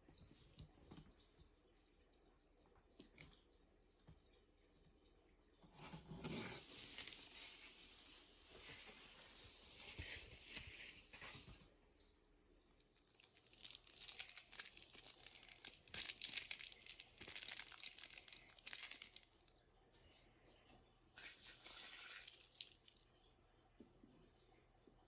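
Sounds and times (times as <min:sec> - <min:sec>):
packaging crinkling and rustling: 0:06.6 - 0:11.6, 0:12.9 - 0:19.5, 0:21.2 - 0:23.0.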